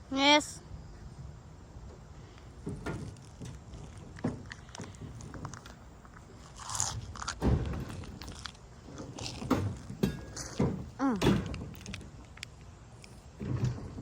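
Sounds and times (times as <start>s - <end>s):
folding frame clicks and creaks: 1.9s - 14.0s
heavy thump: 7.3s - 8.4s, 9.2s - 11.8s.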